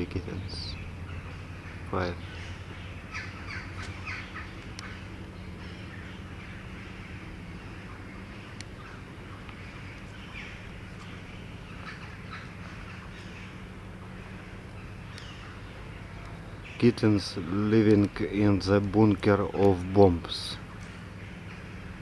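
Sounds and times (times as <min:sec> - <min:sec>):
steady low hum: 0:00.0 - 0:22.0
crows cawing: 0:00.7 - 0:07.1.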